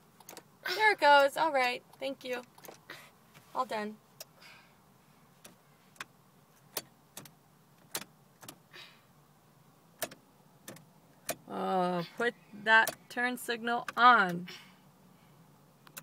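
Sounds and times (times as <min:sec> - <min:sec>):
car dashboard switch clicks: 0:06.7 - 0:08.6, 0:10.0 - 0:11.5, 0:12.8 - 0:13.1.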